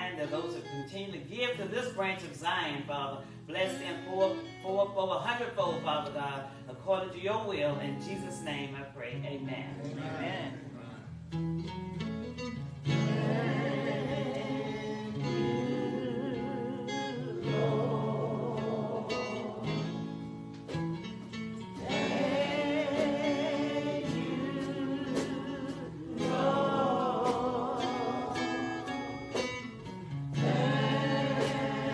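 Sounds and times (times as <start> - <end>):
choir singing gospel: 9.8 - 11.0, 12.8 - 31.9
instrumental accompaniment: 11.1 - 31.9.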